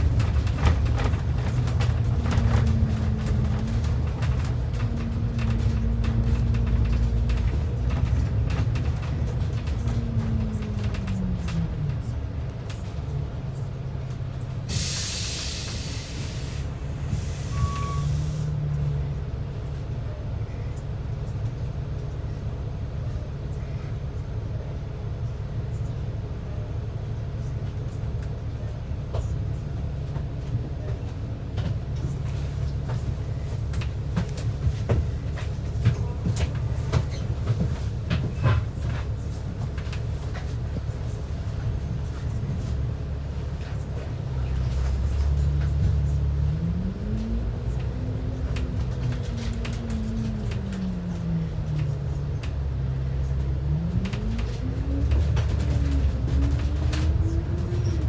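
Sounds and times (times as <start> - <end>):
knocks and rattles over bumps: 0.0 - 14.4, 29.0 - 58.0
bus engine and road rumble: 0.0 - 58.0
air brake hiss: 14.7 - 18.5
short beep: 17.4 - 18.3.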